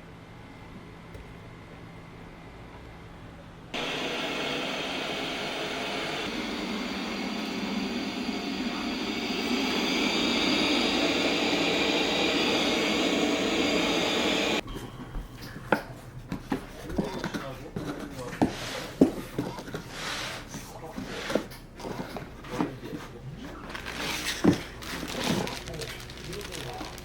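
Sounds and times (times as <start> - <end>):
appliance electric motor running: 3.8 - 14.6.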